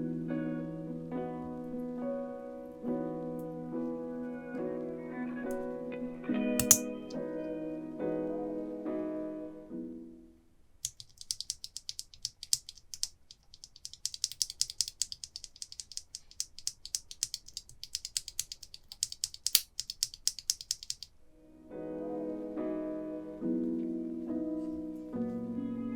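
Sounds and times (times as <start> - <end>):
mechanical keyboard switches clicking: 6.6 - 6.9, 10.8 - 21.1.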